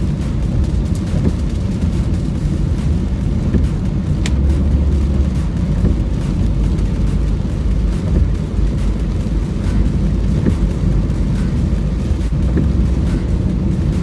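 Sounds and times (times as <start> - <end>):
car driving in heavy rain: 0.0 - 14.0.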